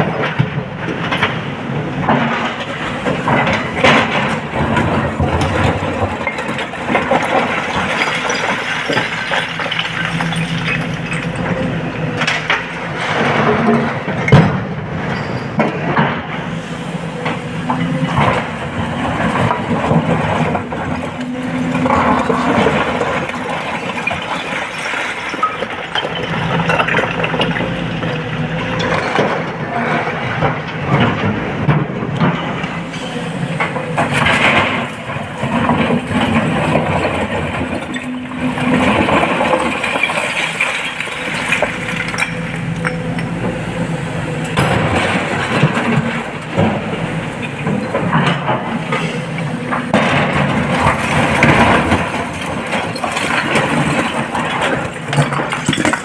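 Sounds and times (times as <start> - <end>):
excavator diesel engine: 0.0 - 56.0
rock clattering into truck: 3.5 - 14.7, 50.0 - 56.0.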